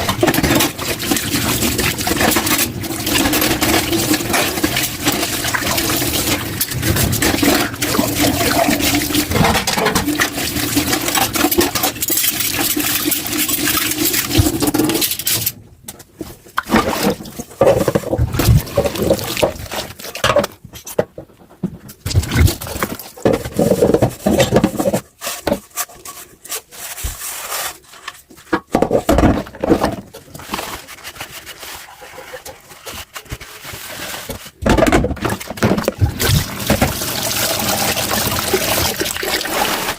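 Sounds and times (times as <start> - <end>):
dishes clinking in sink: 6.3 - 12.3
tap water running into sink: 36.0 - 39.9.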